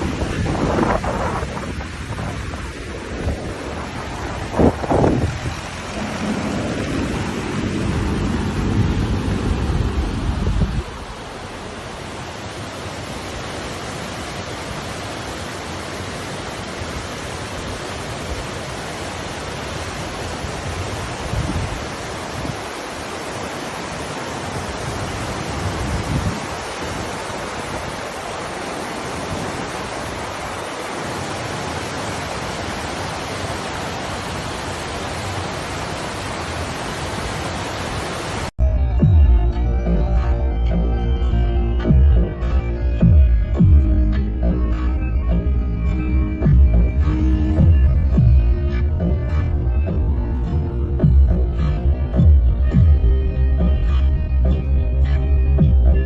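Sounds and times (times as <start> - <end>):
wind bumps on microphone: 0.0 - 11.3, 20.7 - 22.7, 25.3 - 28.0
rushing water: 0.0 - 39.1, 40.1 - 56.0.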